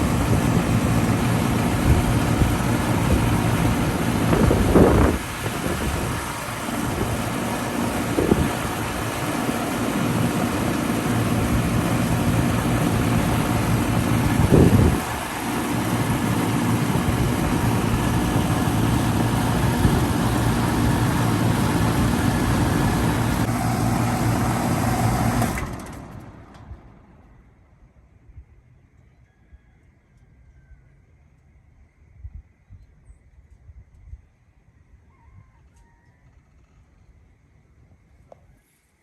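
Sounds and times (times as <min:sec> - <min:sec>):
air conditioner unit humming: 0:00.0 - 0:26.4
air conditioner shutting down: 0:00.0 - 0:27.5.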